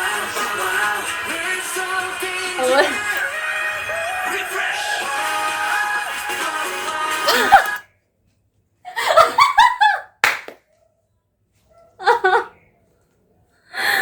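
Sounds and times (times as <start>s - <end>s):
music: 0.0s - 7.8s
woman laughing excitedly: 2.6s - 3.1s, 7.2s - 7.8s, 8.9s - 10.1s, 12.0s - 12.5s
hand slap: 10.2s - 10.6s
breathy sigh: 13.7s - 14.0s.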